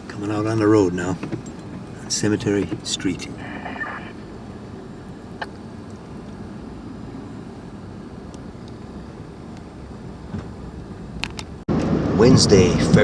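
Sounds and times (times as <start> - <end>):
car engine and tyres rumbling: 0.0 - 13.0.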